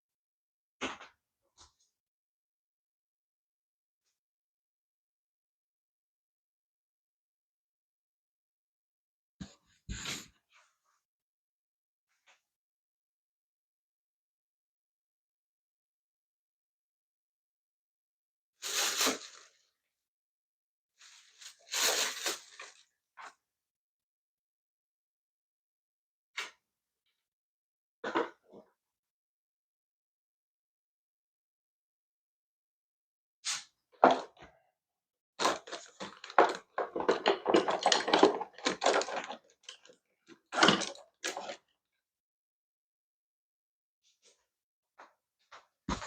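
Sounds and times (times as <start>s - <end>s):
hands rummaging small objects: 35.4s - 39.9s.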